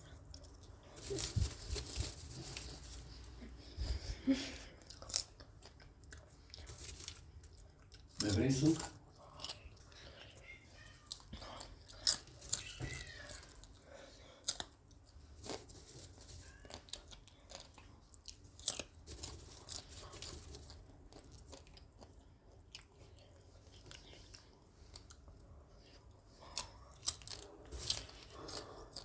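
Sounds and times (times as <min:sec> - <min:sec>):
person chewing popcorn: 0:00.0 - 0:29.0.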